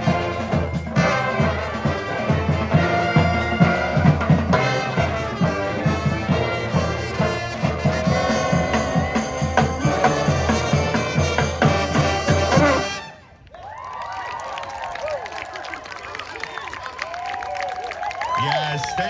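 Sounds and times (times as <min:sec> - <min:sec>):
steady drum beat: 0:00.0 - 0:13.0
trumpets and trombones playing chords: 0:00.0 - 0:13.4.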